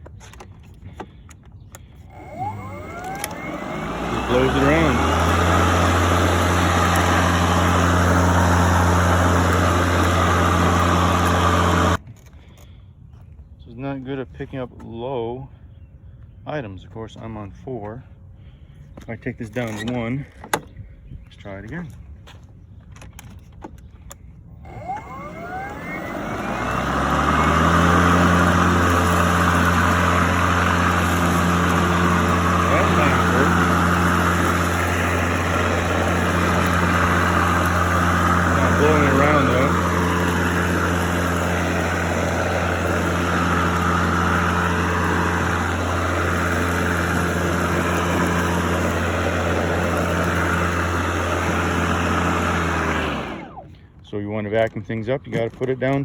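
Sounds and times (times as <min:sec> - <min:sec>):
lawn mower motor hum: 0:00.0 - 0:12.7, 0:19.5 - 0:54.7
air rush from spinning blade: 0:24.7 - 0:53.6.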